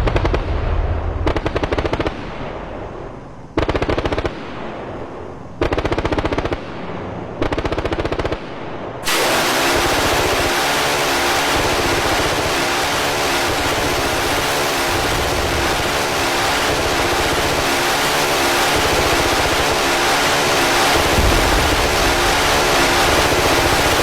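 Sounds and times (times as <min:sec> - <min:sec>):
loud engine running: 0:09.0 - 0:24.0.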